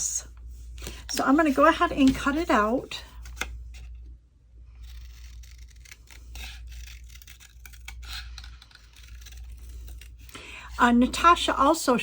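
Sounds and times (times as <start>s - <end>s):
scissors cutting paper: 4.8s - 10.4s.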